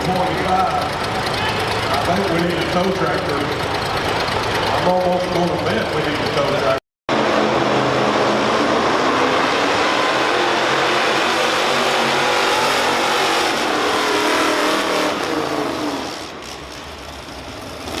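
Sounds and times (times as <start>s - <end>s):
tractor engine running: 0.0s - 6.8s.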